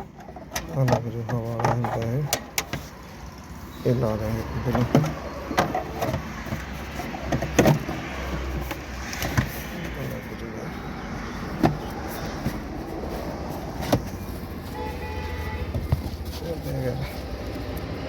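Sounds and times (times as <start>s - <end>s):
knocks and clicks of car parts: 0.0s - 3.5s, 4.4s - 10.1s, 11.4s - 12.8s, 13.6s - 14.8s, 15.6s - 16.4s.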